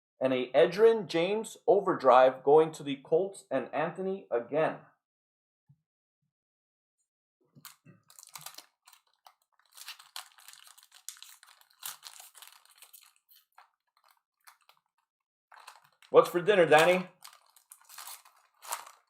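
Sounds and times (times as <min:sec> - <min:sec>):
foil wrapper crinkling: 0:07.6 - 0:19.0.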